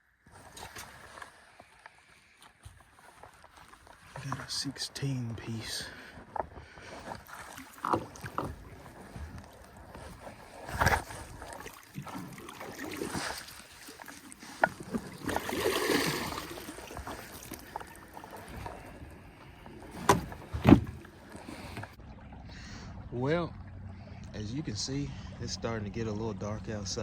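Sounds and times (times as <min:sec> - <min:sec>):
knocks in a boat: 0:19.9 - 0:21.2.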